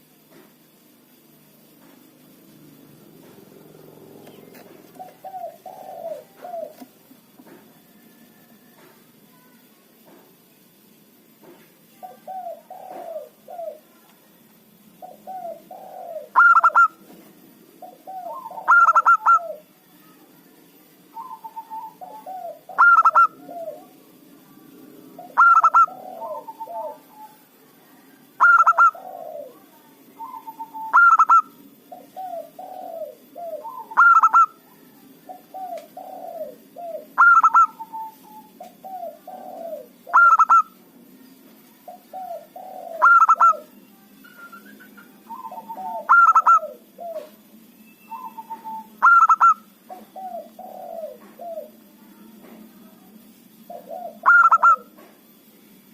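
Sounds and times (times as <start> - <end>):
dove cooing: 2.8 - 8.9, 12.0 - 14.0, 15.0 - 19.7, 21.1 - 40.8, 41.9 - 47.5, 48.1 - 52.0, 53.6 - 55.4.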